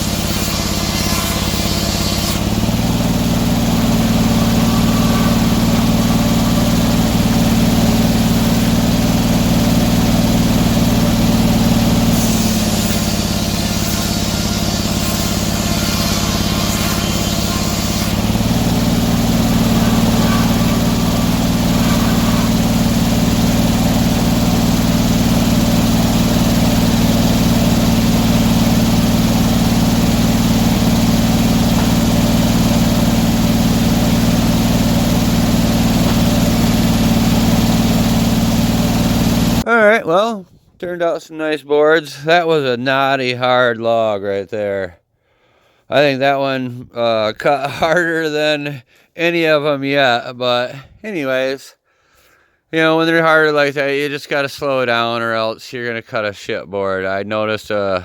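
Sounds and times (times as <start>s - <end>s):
saw blade cutting log: 0.0s - 39.6s
sawmill engine running: 0.0s - 40.3s.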